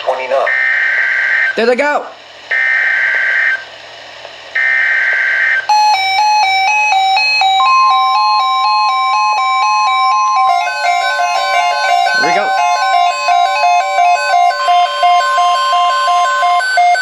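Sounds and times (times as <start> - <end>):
steady warning tone: 5.7 - 17.0
warbling digital data tones: 9.3 - 17.0
rapid stepping electronic beeps: 9.4 - 17.0.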